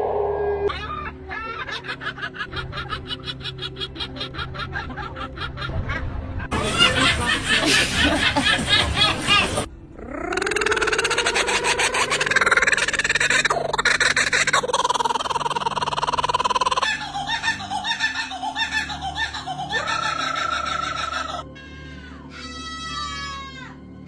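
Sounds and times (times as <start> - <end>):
bird calling: 10.0 - 23.6.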